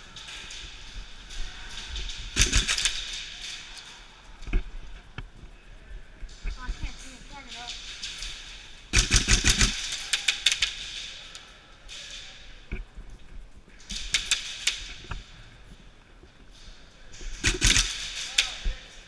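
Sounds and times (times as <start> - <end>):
airsoft gun bursts: 2.4 - 3.2, 8.9 - 10.9, 17.4 - 18.7.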